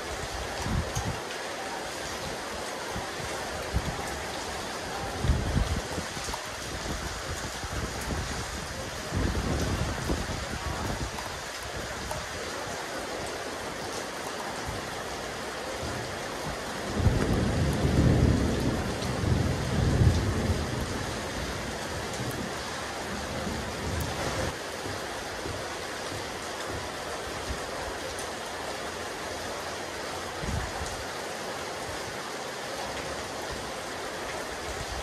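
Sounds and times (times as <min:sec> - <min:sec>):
rain falling on a roof: 0:00.0 - 0:35.0.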